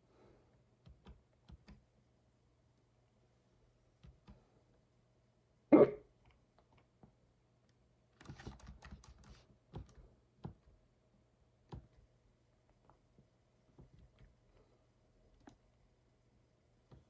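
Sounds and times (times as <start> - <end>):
typing on computer keyboard: 0.8 - 1.8, 8.2 - 10.7
loud hiccup: 5.7 - 6.1.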